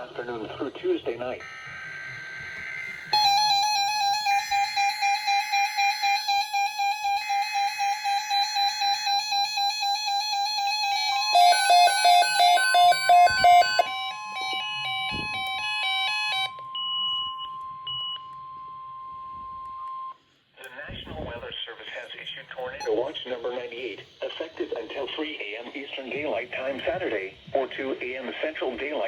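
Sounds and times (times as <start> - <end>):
data bursts: 1.4 - 16.6
stepping electronic tones: 1.4 - 18.1
steady warning alarm tone: 1.4 - 20.2.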